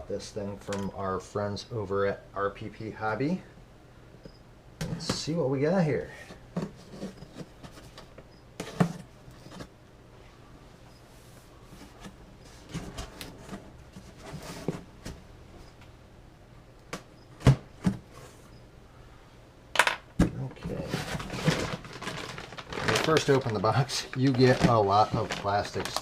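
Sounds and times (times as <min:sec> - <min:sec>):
cardboard packaging rustling: 0:20.6 - 0:26.0.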